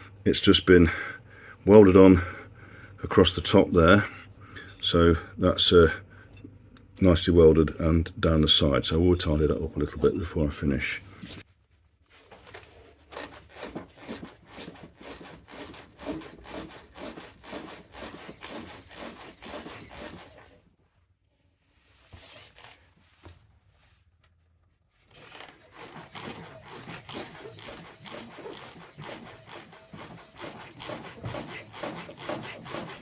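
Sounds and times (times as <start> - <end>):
rubbing and scraping: 11.2 - 20.6, 24.8 - 33.0.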